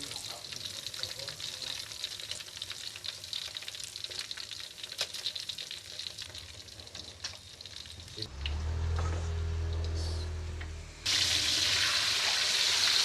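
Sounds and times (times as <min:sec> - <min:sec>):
fish deep-frying in oil: 0:00.0 - 0:08.3, 0:11.0 - 0:13.0
low steady hum: 0:08.3 - 0:11.1.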